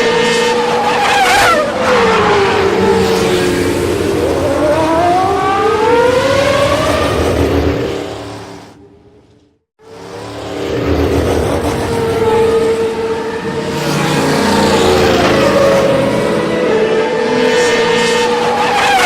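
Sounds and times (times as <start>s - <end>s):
loud motor whine: 0.0s - 19.0s.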